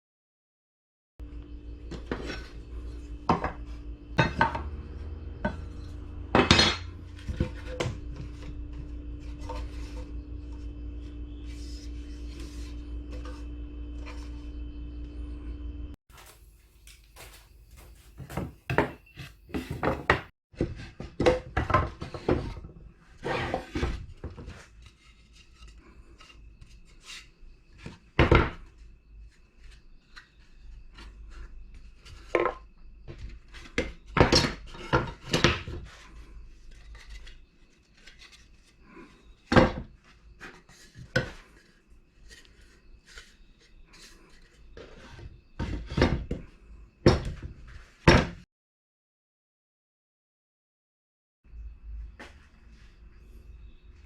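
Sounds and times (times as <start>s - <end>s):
faint steady hum: 1.2s - 20.2s
hard objects knocking and clattering: 4.2s - 8.5s, 17.2s - 22.4s.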